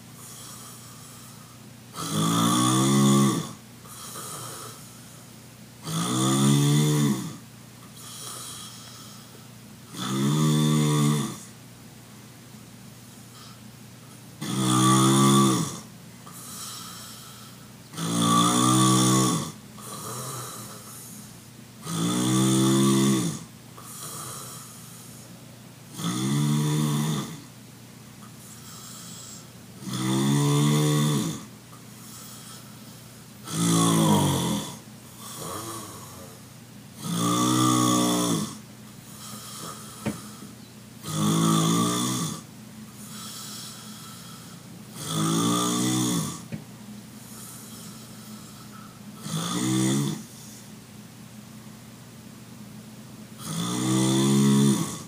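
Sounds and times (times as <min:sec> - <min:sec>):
faint breathing: 0:00.2 - 0:01.7, 0:03.8 - 0:05.4, 0:07.9 - 0:09.6, 0:13.0 - 0:13.8, 0:16.2 - 0:17.8, 0:19.8 - 0:21.5, 0:23.8 - 0:25.5, 0:28.2 - 0:29.7, 0:31.7 - 0:33.4, 0:39.0 - 0:40.7, 0:42.9 - 0:44.8, 0:46.4 - 0:49.2
man snoring heavily: 0:00.2 - 0:05.2, 0:05.8 - 0:07.4, 0:08.0 - 0:11.5, 0:14.4 - 0:25.3, 0:25.9 - 0:27.5, 0:28.4 - 0:36.4, 0:37.0 - 0:46.6, 0:47.2 - 0:50.6, 0:53.4 - 0:55.0.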